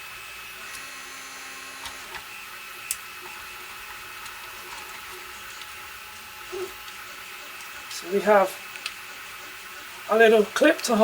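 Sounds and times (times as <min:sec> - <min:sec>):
printer stepper motors whining: 0:00.0 - 0:11.0.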